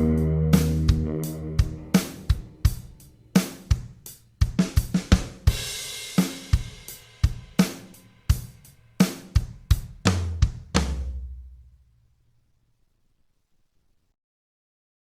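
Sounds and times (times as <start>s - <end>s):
held guitar chord: 0.0s - 3.6s
cymbal crash: 0.0s - 4.0s
drum kit beat: 0.0s - 11.8s.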